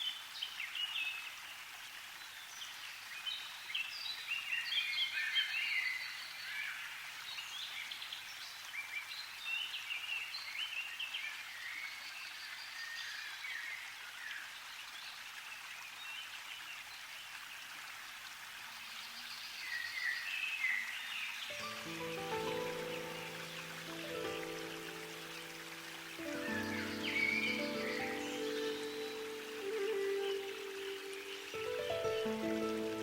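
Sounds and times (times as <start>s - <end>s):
small birds chirping: 18.8s - 33.0s
steady hiss: 21.4s - 33.0s.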